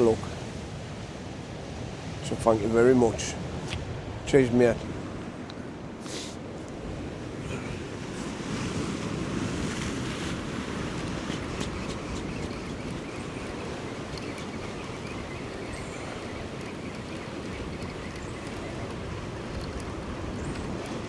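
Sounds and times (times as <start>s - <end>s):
wind on microphone: 6.7s - 21.0s
waves washing onto rocks: 7.2s - 21.0s.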